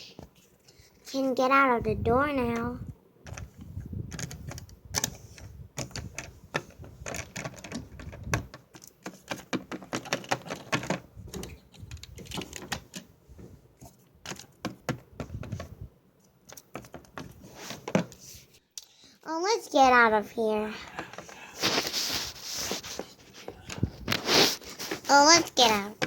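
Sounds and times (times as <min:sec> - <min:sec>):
plastic toys clicking: 0:03.3 - 0:13.1, 0:14.3 - 0:15.6, 0:16.5 - 0:18.2.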